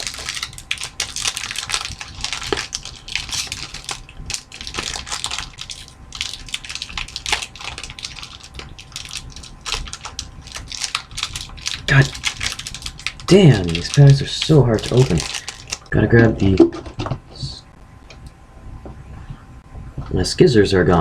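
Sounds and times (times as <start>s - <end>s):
foil wrapper crinkling: 0.0s - 16.6s.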